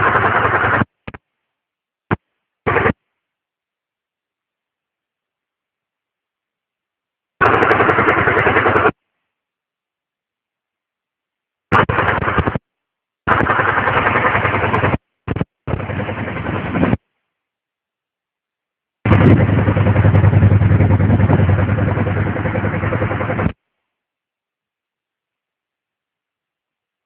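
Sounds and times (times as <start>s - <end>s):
motorcycle engine knocking: 19.1s - 23.5s.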